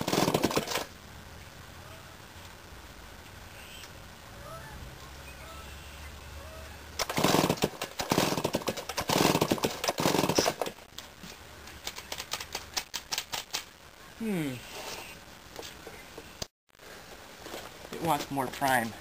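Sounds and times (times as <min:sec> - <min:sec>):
chainsaw engine cranking pops: 0:00.0 - 0:00.9, 0:07.0 - 0:10.8.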